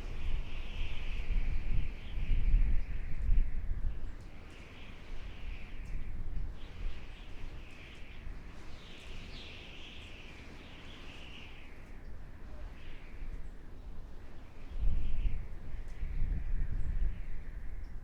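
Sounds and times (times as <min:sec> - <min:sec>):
howling wind: 0:00.0 - 0:18.0.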